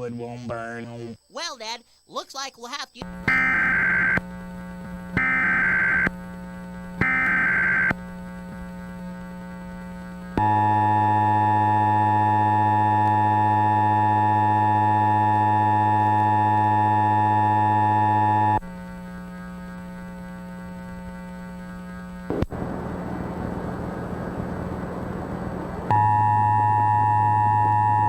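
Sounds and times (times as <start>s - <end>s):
low hum: 5.9s - 28.0s
two-tone attention signal: 25.9s - 28.0s.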